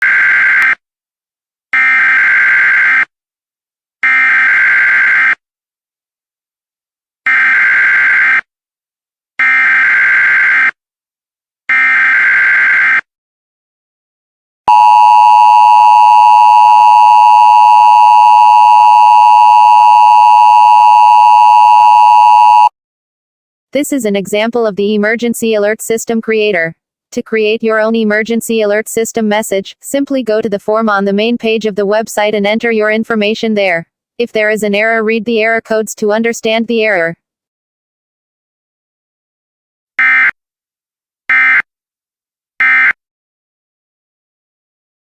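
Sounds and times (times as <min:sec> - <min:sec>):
two-tone attention signal: 0:14.7 - 0:22.7.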